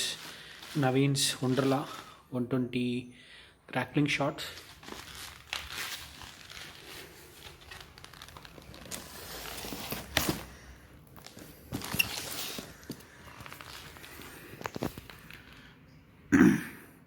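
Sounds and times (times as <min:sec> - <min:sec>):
packaging rustling and clicking: 0:04.6 - 0:15.7.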